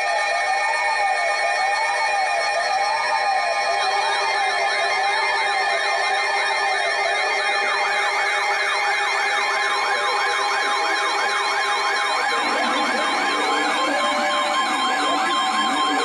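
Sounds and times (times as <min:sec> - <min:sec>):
siren wail: 0:09.1 - 0:16.0
electronic sirens yelping: 0:09.2 - 0:16.0.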